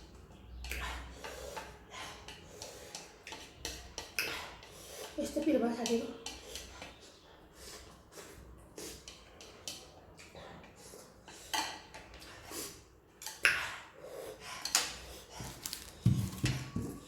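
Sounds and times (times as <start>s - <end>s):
cutlery clinking on dishes: 11.2s - 12.3s.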